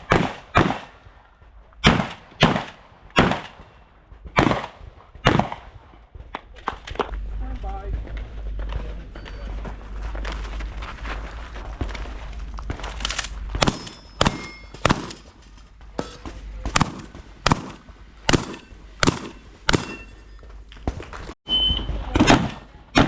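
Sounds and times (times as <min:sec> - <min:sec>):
shotgun shots: 0:00.0 - 0:01.2, 0:01.8 - 0:07.1, 0:13.5 - 0:15.4, 0:16.5 - 0:20.2, 0:21.8 - 0:23.0
short high beep: 0:21.5 - 0:22.0.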